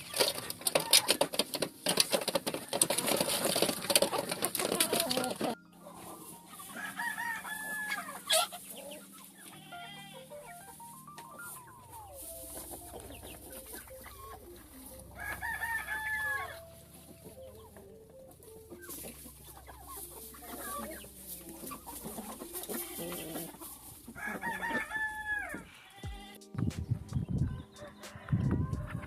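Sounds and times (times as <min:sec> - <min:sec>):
hens clucking: 0:00.0 - 0:29.0
rooster crowing: 0:06.7 - 0:08.5, 0:15.1 - 0:16.7, 0:24.1 - 0:26.1, 0:27.5 - 0:29.0.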